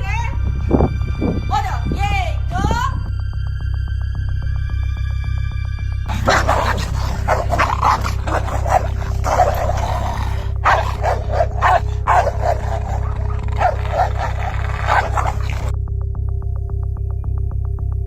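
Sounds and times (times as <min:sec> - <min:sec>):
dog barking: 0:06.1 - 0:15.7.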